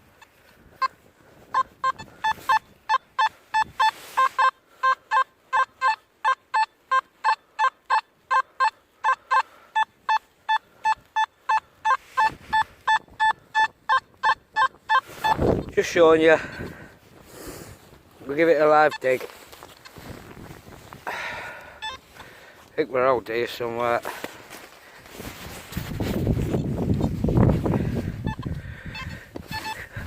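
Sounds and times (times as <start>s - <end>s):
metal detector beeping: 0.1s - 16.8s, 18.4s - 20.1s, 21.2s - 22.2s, 27.8s - 30.0s.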